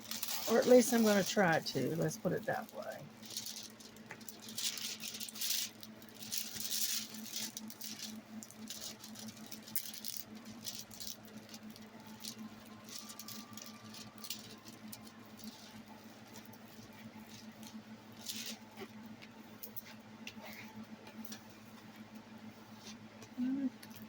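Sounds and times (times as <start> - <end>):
canvas rustling and crinkling: 0.0 - 19.1
faint steady hum: 0.0 - 24.0.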